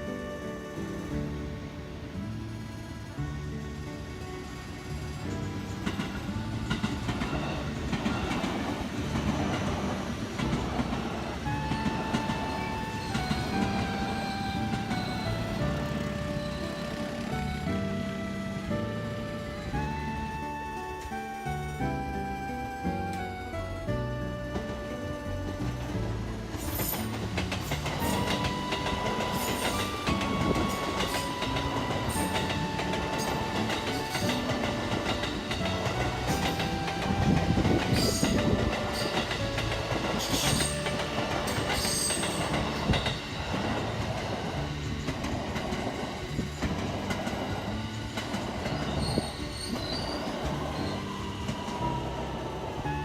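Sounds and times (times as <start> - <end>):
held tones changing pitch: 0.0 - 3.7, 5.9 - 26.6, 27.7 - 44.0
train wheels clacking on rails: 0.0 - 53.0.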